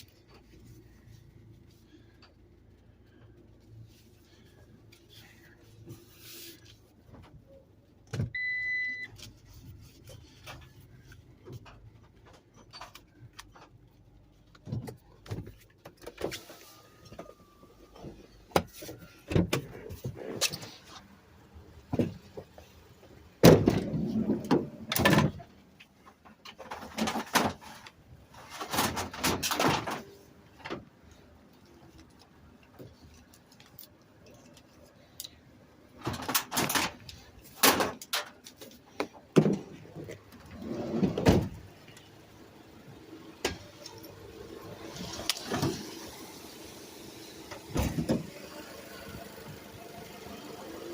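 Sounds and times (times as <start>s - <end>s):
short electronic beep: 8.4s - 9.1s.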